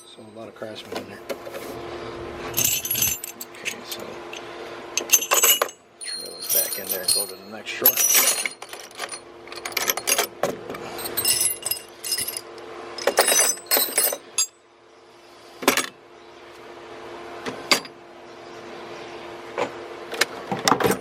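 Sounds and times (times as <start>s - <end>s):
steel tools clinking in metal drawer: 2.6s - 10.3s, 10.9s - 14.6s.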